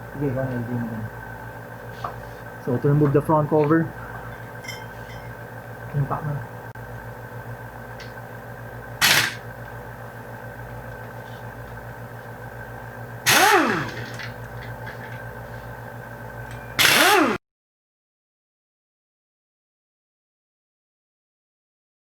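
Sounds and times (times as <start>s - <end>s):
impact wrench undoing bolts: 9.0s - 9.4s, 13.3s - 15.2s, 16.8s - 17.4s.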